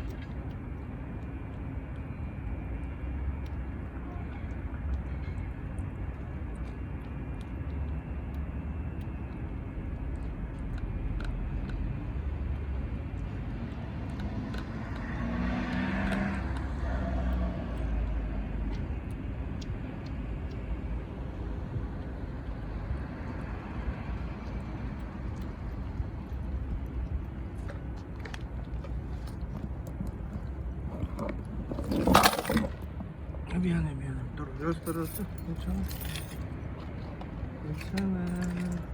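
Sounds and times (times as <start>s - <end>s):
low traffic rumble: 0.0s - 38.9s
object dropping with clatter: 31.7s - 32.8s.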